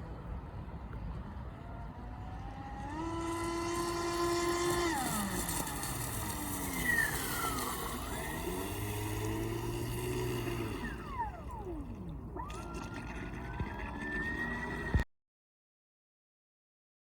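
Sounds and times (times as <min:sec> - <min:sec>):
electric motor whining: 0:02.0 - 0:15.0.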